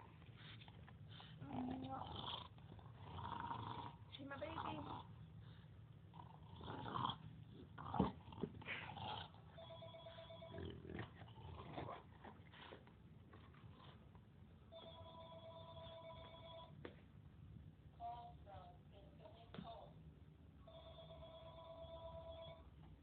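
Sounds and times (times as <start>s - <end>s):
telephone ringing: 9.5s - 10.7s, 14.7s - 16.8s, 20.6s - 22.7s.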